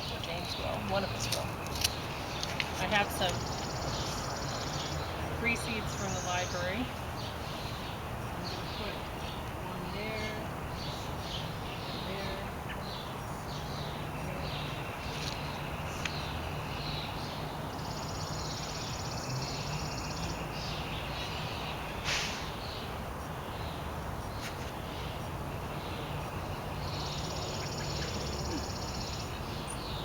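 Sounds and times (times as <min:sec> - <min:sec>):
songbirds chirping: 0:00.0 - 0:30.0
short rushing noise: 0:22.0 - 0:22.6.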